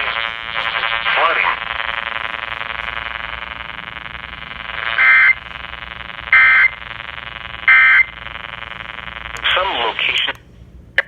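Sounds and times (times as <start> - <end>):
steady buzzing drone: 0.0 - 11.0.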